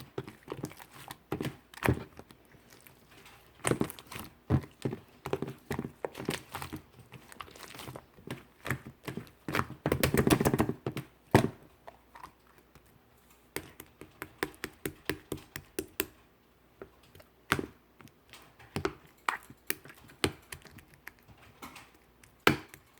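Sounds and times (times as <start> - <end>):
slime squished by hand: 0.0 - 10.7.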